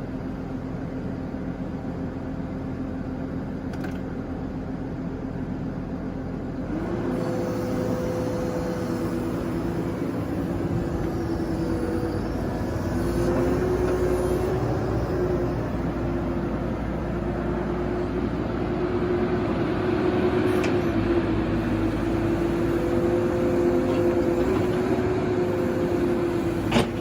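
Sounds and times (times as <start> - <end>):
excavator diesel engine running: 0.0 - 27.0.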